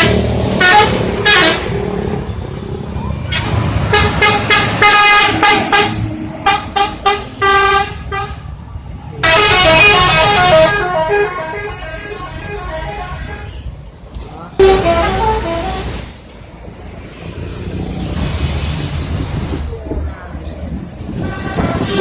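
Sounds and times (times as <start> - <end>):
musical bus horn: 0.0 - 1.8, 3.9 - 8.5, 9.2 - 13.7, 14.6 - 16.2, 21.2 - 22.0.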